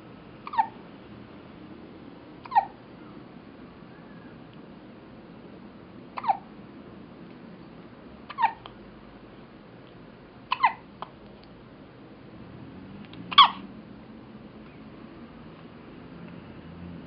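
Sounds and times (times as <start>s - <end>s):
baby hiccuping: 0.4s - 0.8s, 2.4s - 2.8s, 6.2s - 6.5s, 8.3s - 8.6s, 10.5s - 10.9s, 13.3s - 13.6s.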